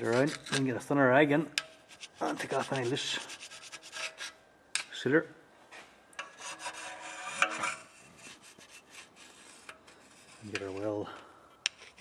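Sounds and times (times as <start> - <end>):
scraping gasket sealer off metal: 1.7 - 4.4, 6.2 - 11.0, 11.7 - 12.0.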